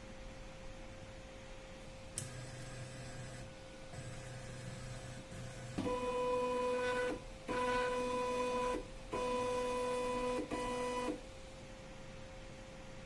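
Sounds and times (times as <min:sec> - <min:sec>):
faint constant hum: 0:00.0 - 0:13.0.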